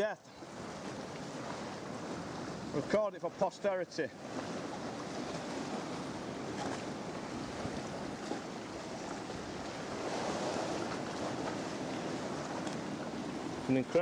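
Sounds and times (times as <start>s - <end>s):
surf breaking on rocks: 0.0s - 14.0s
wind on microphone: 4.2s - 14.0s.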